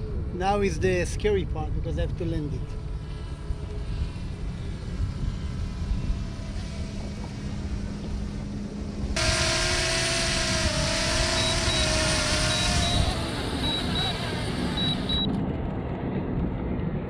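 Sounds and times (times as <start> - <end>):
drone propellers whirring: 3.3 - 15.5.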